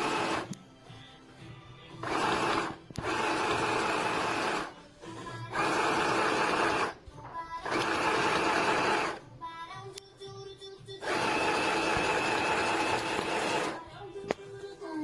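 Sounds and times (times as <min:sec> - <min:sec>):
sewing machine stitching: 0:00.0 - 0:00.6, 0:02.0 - 0:09.3, 0:11.0 - 0:13.9
faint background music: 0:00.0 - 0:15.0.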